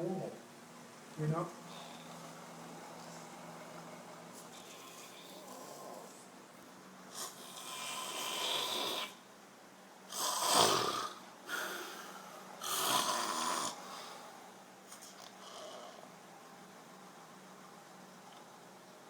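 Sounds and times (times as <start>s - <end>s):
man snoring heavily: 7.2s - 9.2s, 10.1s - 14.2s.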